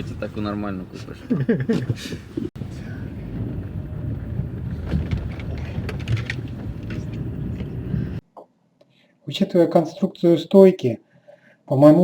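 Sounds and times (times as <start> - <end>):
road rumble: 0.0 - 8.2
suspension knocks: 1.7 - 8.2.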